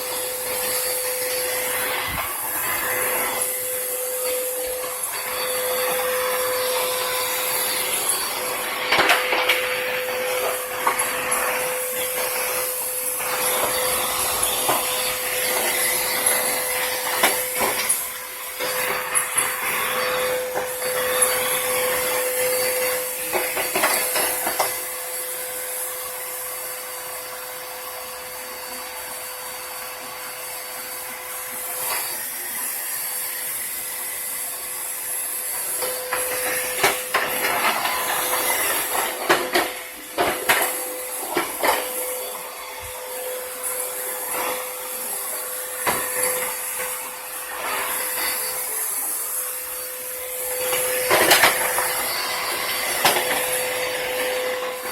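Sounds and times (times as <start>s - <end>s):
vacuum cleaner whining: 0.0s - 54.9s.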